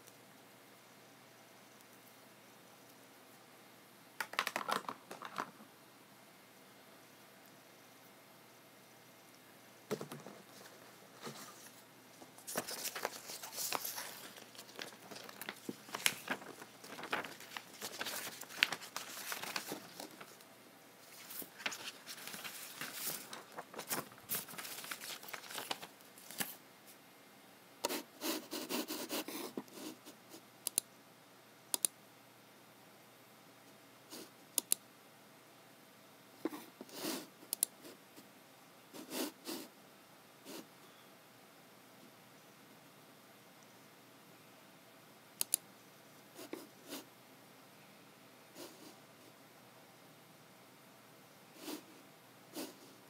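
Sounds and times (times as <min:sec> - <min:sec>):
computer clicks and taps: 0:30.6 - 0:30.9, 0:31.8 - 0:32.0, 0:34.6 - 0:34.8, 0:45.4 - 0:45.6.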